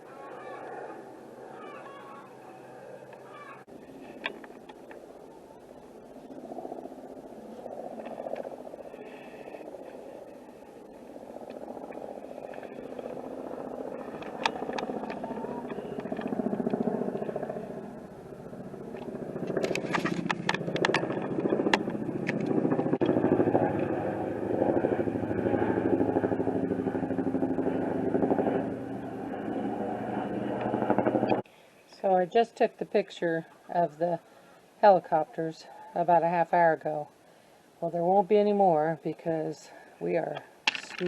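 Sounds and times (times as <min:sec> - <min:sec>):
engine running: 0:02.5 - 0:31.4
sharp clicks: 0:14.2 - 0:16.8.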